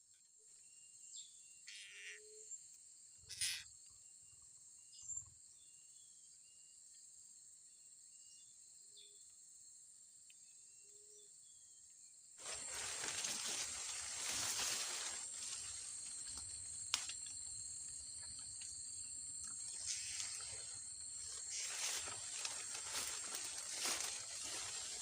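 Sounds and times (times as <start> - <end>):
insect drone: 0.1 - 25.0
loud rustling hiss: 12.4 - 16.0, 19.8 - 25.0.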